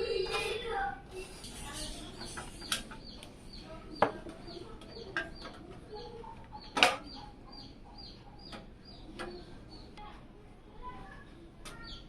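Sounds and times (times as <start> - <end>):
bird chirping: 1.2 - 10.1.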